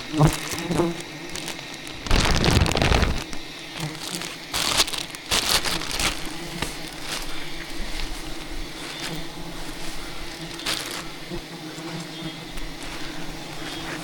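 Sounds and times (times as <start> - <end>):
bees buzzing: 0.0 - 14.0
rustling brushing bursts: 0.2 - 11.3.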